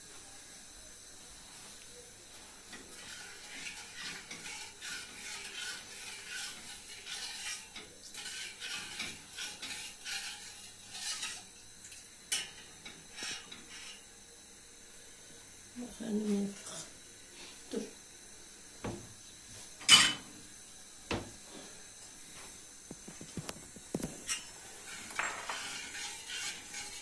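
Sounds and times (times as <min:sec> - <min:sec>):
spoon scraping a pot: 0:02.7 - 0:11.6, 0:12.3 - 0:14.0, 0:23.3 - 0:27.0.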